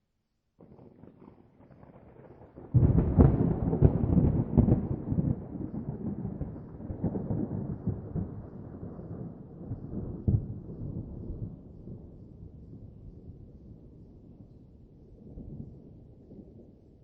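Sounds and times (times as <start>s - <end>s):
thunder cracks and rumble: 0.6s - 13.6s.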